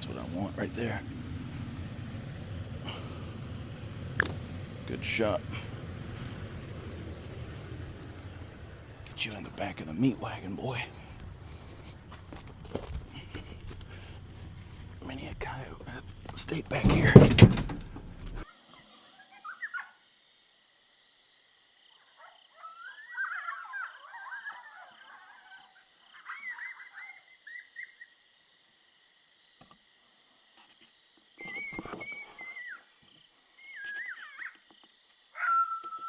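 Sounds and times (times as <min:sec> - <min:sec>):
coyotes yipping and howling: 0:00.0 - 0:16.7, 0:19.0 - 0:20.1, 0:22.0 - 0:28.3, 0:31.4 - 0:36.0.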